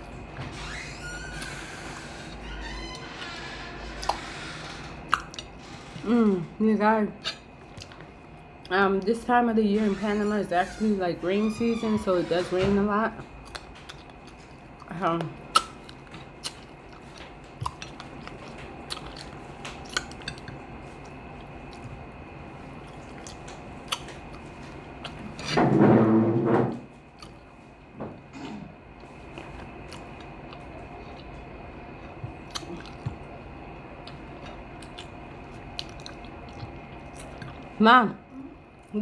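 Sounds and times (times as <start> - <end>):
chewing and lip-smacking: 3.0 - 6.0, 7.2 - 9.3, 13.2 - 25.6, 27.1 - 27.6, 28.4 - 37.8
small mouth clicks: 15.5 - 20.6, 22.9 - 24.2, 27.2 - 27.4, 32.3 - 33.2.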